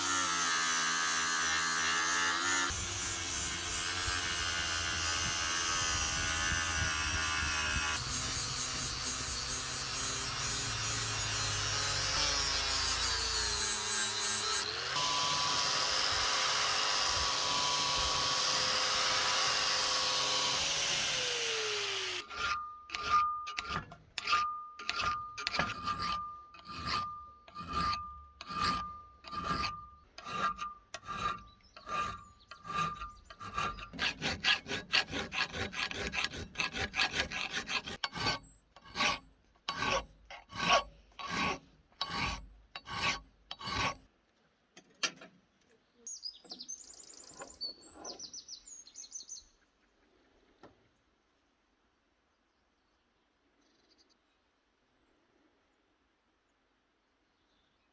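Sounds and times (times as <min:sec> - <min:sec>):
hand-filing strokes: 0:00.0 - 0:44.0
power tool winding down: 0:08.1 - 0:22.5.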